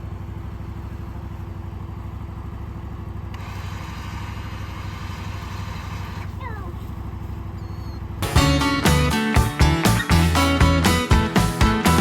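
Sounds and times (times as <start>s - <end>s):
small engine idling: 0.0s - 8.7s.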